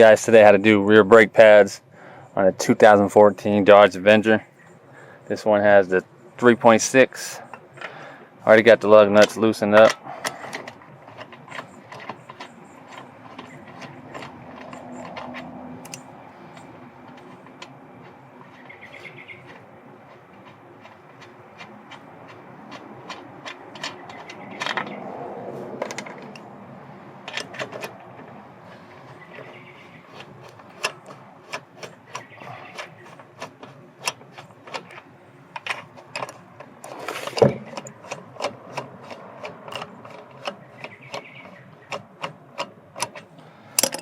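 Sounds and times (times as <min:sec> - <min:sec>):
metal tools clicking and clanking: 0:07.2 - 0:25.0, 0:27.2 - 0:44.0.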